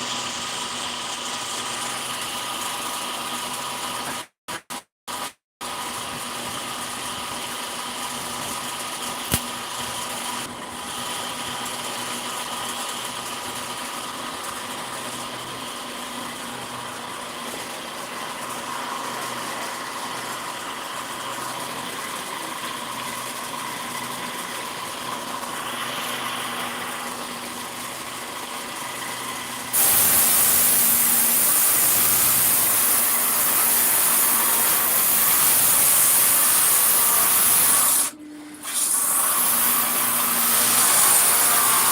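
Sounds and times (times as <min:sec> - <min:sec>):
sharp click: 0:09.2 - 0:09.5
loud steady hiss: 0:29.8 - 0:37.0.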